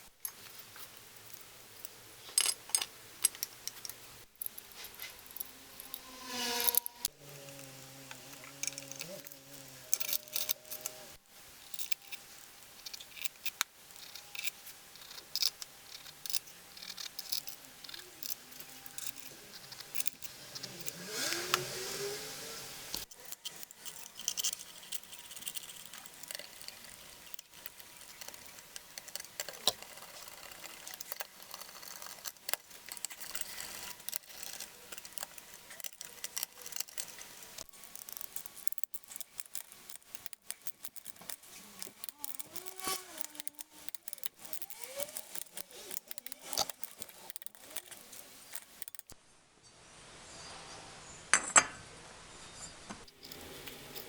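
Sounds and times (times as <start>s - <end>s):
metal tools clinking: 0.2s - 11.0s.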